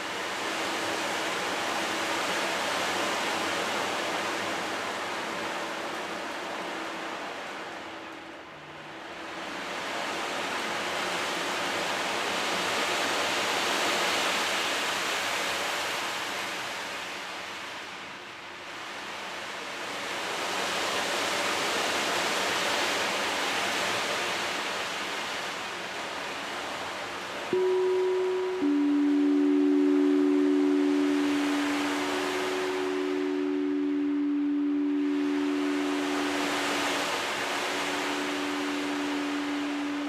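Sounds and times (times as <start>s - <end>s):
faint low bowl tone: 27.5s - 40.0s
surf-like rushing noise: 27.6s - 40.0s.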